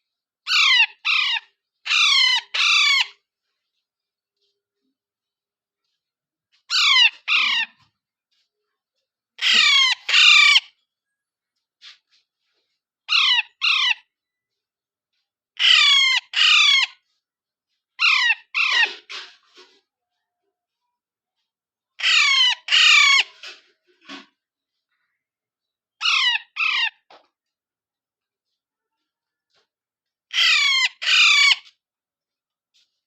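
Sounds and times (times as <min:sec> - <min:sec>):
parrot squawking: 0:00.5 - 0:03.2, 0:06.7 - 0:07.8, 0:09.4 - 0:10.7, 0:13.1 - 0:14.0, 0:15.6 - 0:17.0, 0:18.0 - 0:19.0, 0:22.0 - 0:23.3, 0:26.0 - 0:27.0, 0:30.3 - 0:31.7.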